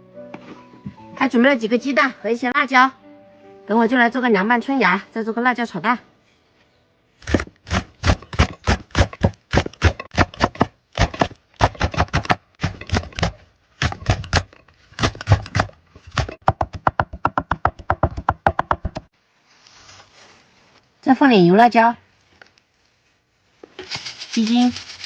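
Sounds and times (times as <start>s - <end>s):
knife chopping on cutting board: 7.3s - 19.0s.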